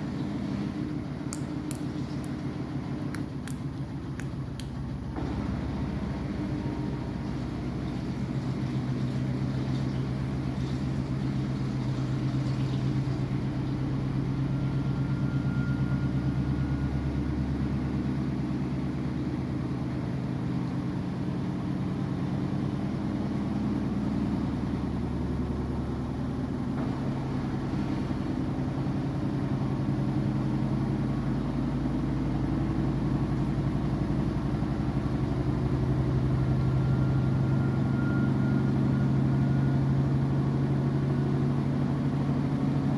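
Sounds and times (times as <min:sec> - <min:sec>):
washing machine motor hum: 0:00.0 - 0:42.9
faint high whine: 0:13.4 - 0:17.8, 0:36.1 - 0:41.4.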